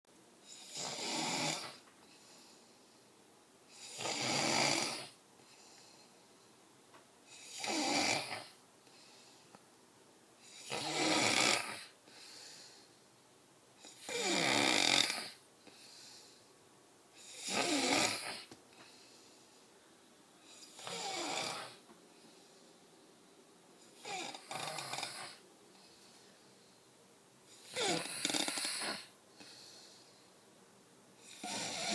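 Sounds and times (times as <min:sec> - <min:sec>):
man snoring: 0:00.5 - 0:01.8, 0:03.7 - 0:05.2, 0:07.3 - 0:08.6, 0:10.5 - 0:11.9, 0:13.8 - 0:15.4, 0:17.2 - 0:18.5, 0:20.5 - 0:21.8, 0:24.0 - 0:25.4, 0:27.6 - 0:29.1, 0:31.2 - 0:31.9
faint breathing: 0:01.8 - 0:03.9, 0:05.1 - 0:06.7, 0:08.5 - 0:09.6, 0:11.8 - 0:13.2, 0:15.3 - 0:16.6, 0:18.3 - 0:30.6.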